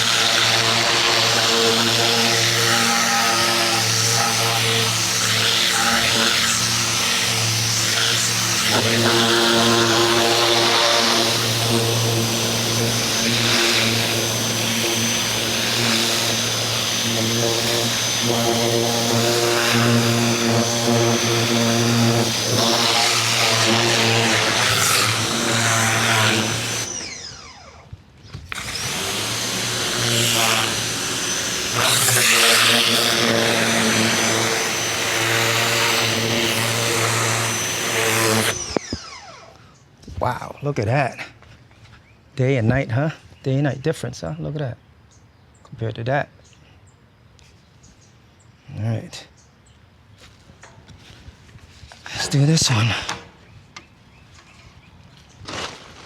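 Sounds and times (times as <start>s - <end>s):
pressure washer motor humming: 0.0s - 27.9s, 28.5s - 39.6s.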